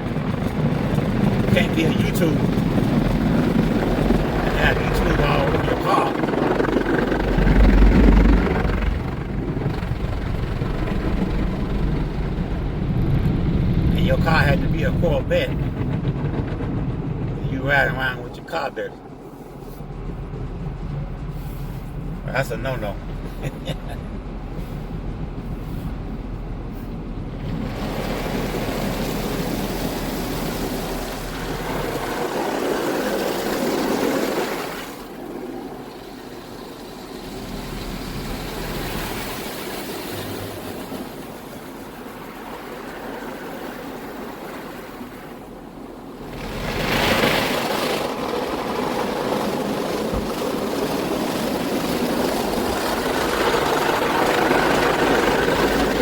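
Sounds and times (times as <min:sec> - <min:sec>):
machinery running: 0:00.0 - 0:34.0, 0:46.2 - 0:56.0.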